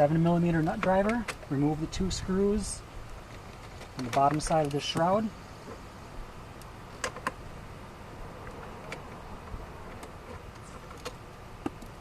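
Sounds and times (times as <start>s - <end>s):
steady low background noise: 0.0s - 12.0s.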